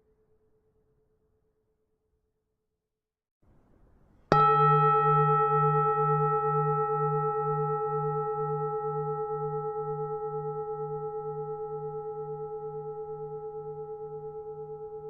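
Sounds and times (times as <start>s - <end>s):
temple bell ringing: 4.3s - 14.8s.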